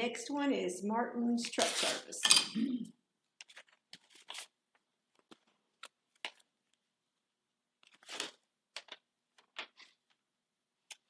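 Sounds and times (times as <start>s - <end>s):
paper rustling: 3.4s - 6.9s, 7.8s - 11.0s.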